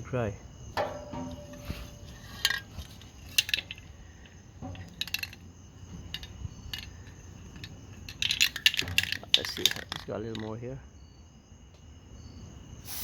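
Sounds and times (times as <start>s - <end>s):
insects chirping: 0.0s - 13.0s
light metallic clinks and taps: 0.8s - 10.6s.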